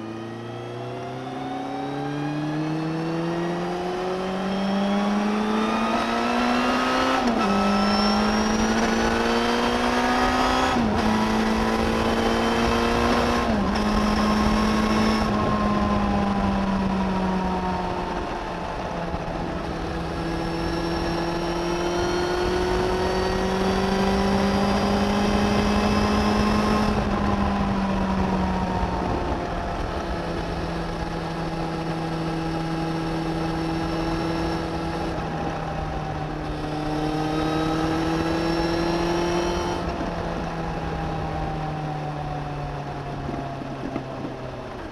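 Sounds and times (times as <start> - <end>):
motorcycle engine accelerating: 0.0 - 44.9.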